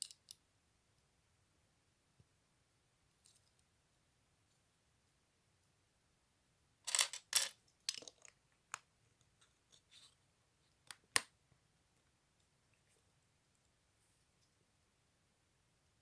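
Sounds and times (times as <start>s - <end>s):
plastic pieces clicking: 6.9s - 8.3s
plastic pieces handled: 6.9s - 8.3s
plastic pieces rustling: 6.9s - 8.3s.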